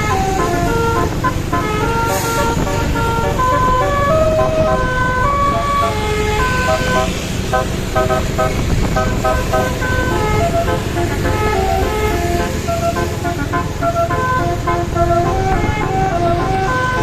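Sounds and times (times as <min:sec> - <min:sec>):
bus horn playing melody: 0:00.0 - 0:17.0.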